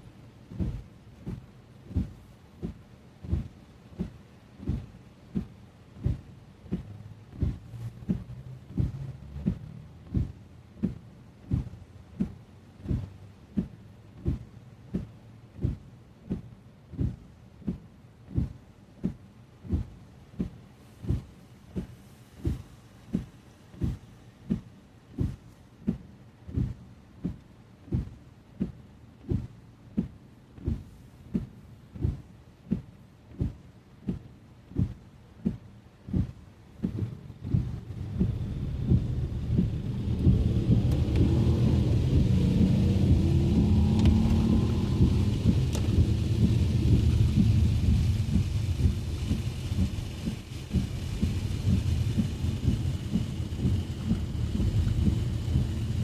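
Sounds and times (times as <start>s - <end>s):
road noise: 0.0s - 14.2s, 36.0s - 56.0s
hiss of rain: 0.0s - 56.0s
windscreen wipers thudding: 0.0s - 56.0s.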